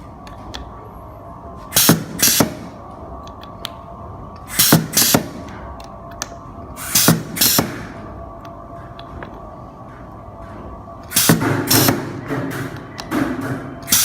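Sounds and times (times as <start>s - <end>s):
pneumatic crimping machine air bursts: 1.7s - 2.7s, 4.5s - 5.4s, 6.8s - 8.0s, 11.1s - 12.8s.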